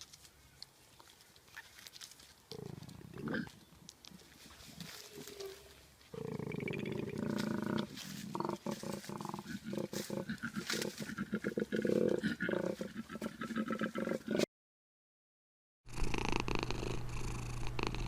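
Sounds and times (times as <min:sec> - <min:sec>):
big cat growling: 0:02.5 - 0:03.5, 0:05.2 - 0:14.4.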